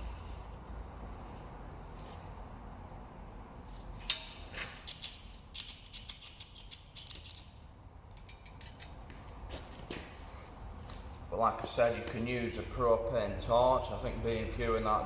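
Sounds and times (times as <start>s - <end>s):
metallic clicks and clinks: 4.0s - 8.9s.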